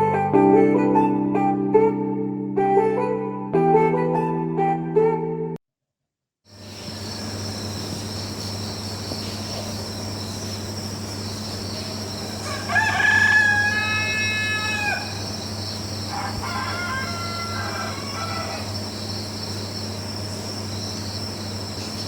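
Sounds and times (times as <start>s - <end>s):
steady low hum: 6.5s - 22.0s
bird calling: 6.6s - 22.0s.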